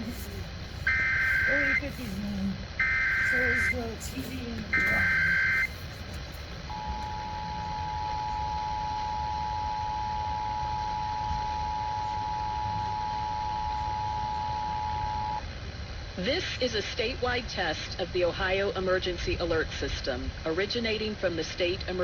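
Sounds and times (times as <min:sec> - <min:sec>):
steady two-tone attention signal: 0:00.0 - 0:05.9.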